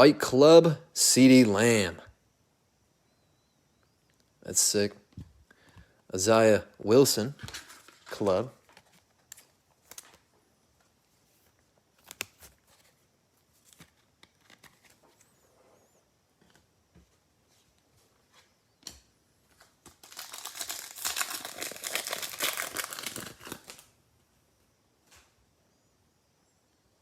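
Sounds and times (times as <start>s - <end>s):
plastic wrapper tearing and crinkling: 19.8s - 23.9s.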